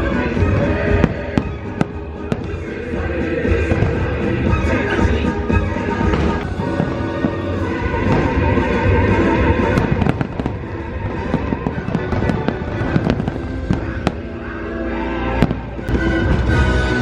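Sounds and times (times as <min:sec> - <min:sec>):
fireworks cracking and banging: 0:00.0 - 0:14.5, 0:15.3 - 0:17.0
loud show music: 0:00.0 - 0:17.0.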